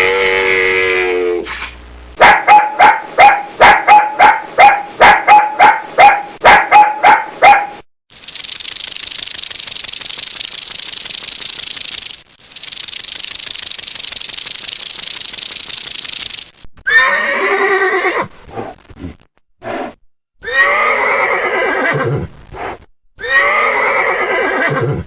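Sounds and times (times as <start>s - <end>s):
dog barking rapidly: 2.2s - 7.8s
steady high hiss: 8.1s - 16.6s.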